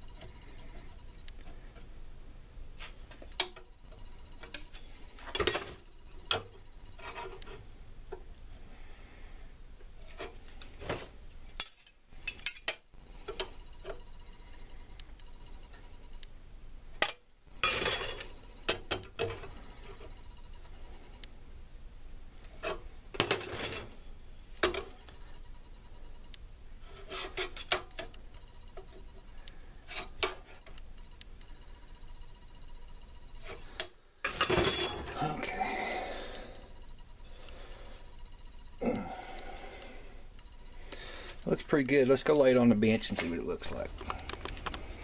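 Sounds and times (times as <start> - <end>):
metal scraping and rubbing: 6.9 - 7.7, 26.8 - 27.8, 34.3 - 35.8.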